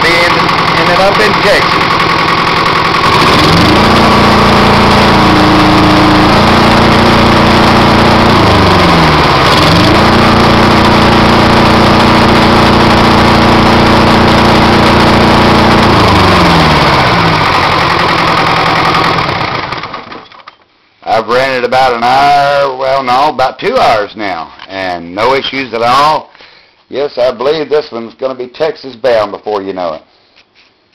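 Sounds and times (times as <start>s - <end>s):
diesel engine revving: 0.0s - 20.2s.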